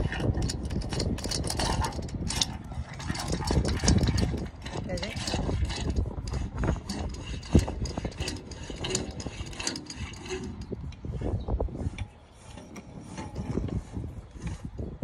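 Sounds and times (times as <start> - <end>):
cable reel rattling and clicking: 0.0 - 14.9.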